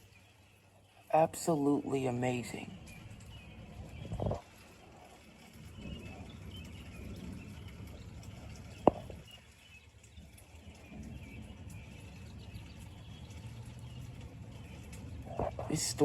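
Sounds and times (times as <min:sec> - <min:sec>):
thunder rumbling: 0:02.7 - 0:09.3.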